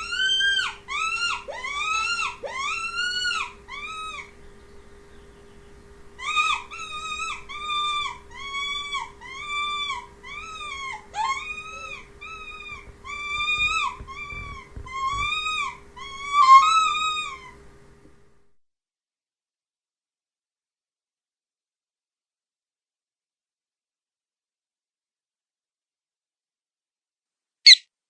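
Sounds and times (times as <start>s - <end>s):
faint steady hum: 0.0s - 18.6s.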